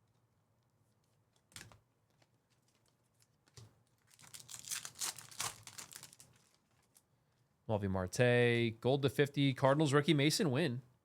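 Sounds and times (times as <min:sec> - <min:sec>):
foil wrapper crinkling: 0:01.6 - 0:07.1.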